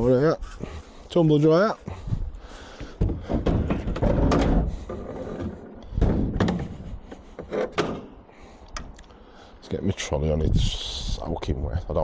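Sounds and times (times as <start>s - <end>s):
scrap metal knocking and clunking: 2.7s - 8.2s.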